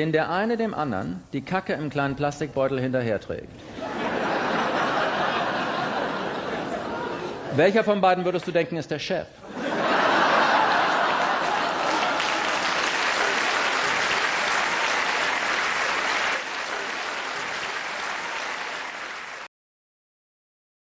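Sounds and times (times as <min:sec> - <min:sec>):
audience applauding and cheering: 0:10.2 - 0:19.5.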